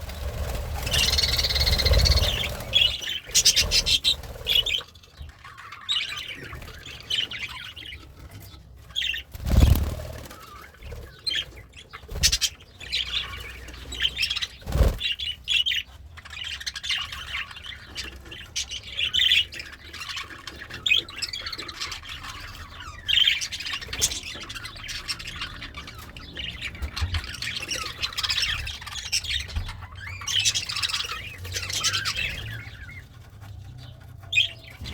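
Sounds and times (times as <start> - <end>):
budgerigar chattering and warbling: 10.3 - 34.9.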